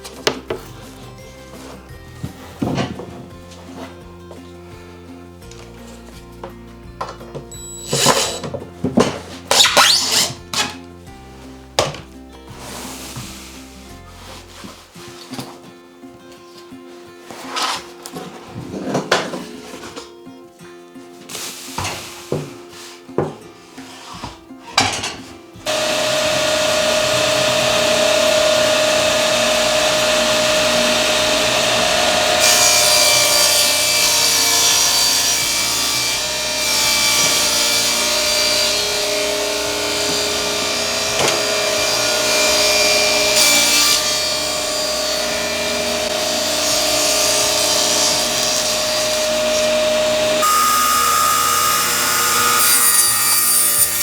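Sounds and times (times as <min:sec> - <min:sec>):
table saw cutting wood: 0:07.5 - 0:08.6, 0:09.4 - 0:10.8, 0:25.7 - 0:54.0.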